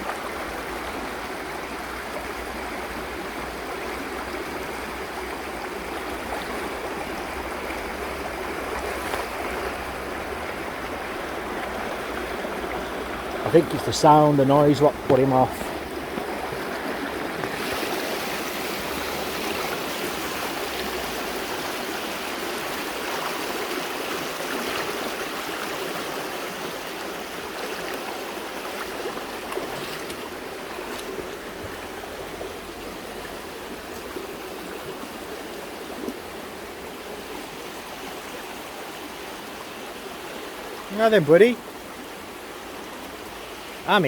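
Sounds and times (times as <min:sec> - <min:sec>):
river rapids rushing: 0:03.8 - 0:32.8, 0:43.7 - 0:44.0.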